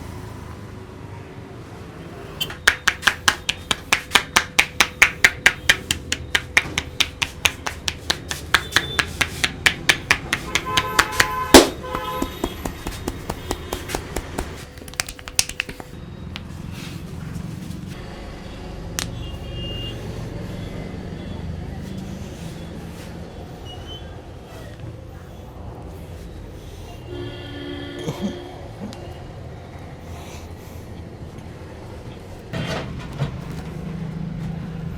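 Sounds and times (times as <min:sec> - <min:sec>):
low traffic hum: 0:00.0 - 0:34.9
hands slapping on a head: 0:02.6 - 0:16.5.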